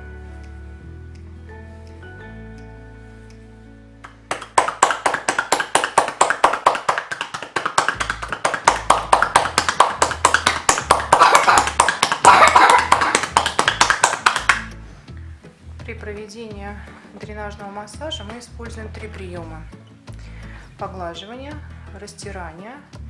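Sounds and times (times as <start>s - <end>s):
soft background music: 0.0s - 23.0s
hands slapping a child's back: 4.0s - 14.8s.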